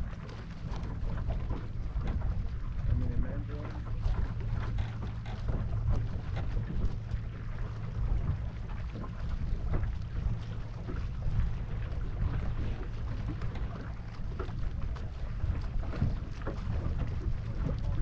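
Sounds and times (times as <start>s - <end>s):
water splashing against hull: 0.0s - 18.0s
wind rumbling on microphone: 0.0s - 18.0s.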